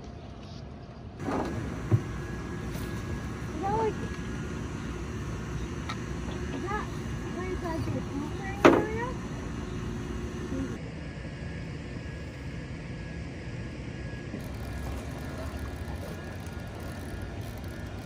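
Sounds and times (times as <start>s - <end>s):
boat motor running: 1.2s - 10.8s, 14.2s - 18.0s.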